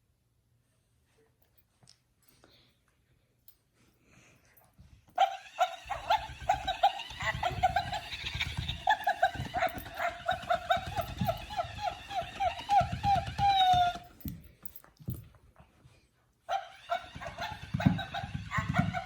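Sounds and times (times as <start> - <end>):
dog toy squeaker squeaking: 5.2 - 14.4, 16.5 - 19.0.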